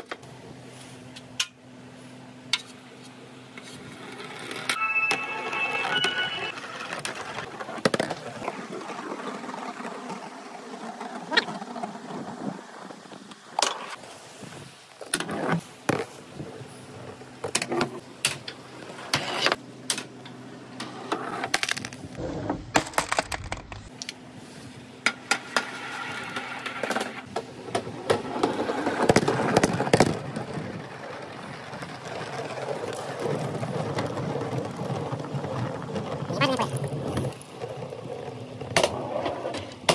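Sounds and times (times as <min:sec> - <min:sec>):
balls rolling through marble run: 0:03.8 - 0:12.0, 0:18.4 - 0:23.9, 0:25.1 - 0:39.9
sharp clicks and knocks of balls: 0:22.8 - 0:24.2.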